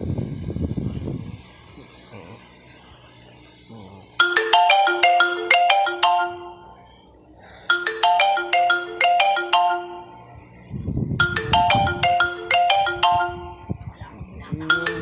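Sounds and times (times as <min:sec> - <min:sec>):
marimba phone ringtone: 0:04.2 - 0:10.4, 0:11.2 - 0:13.8, 0:14.6 - 0:15.0.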